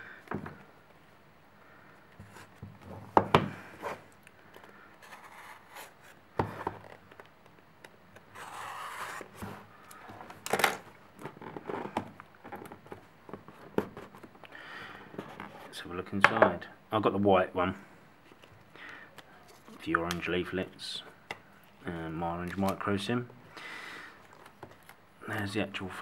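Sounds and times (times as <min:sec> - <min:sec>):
cardboard box scraping and rubbing: 0:08.4 - 0:09.6.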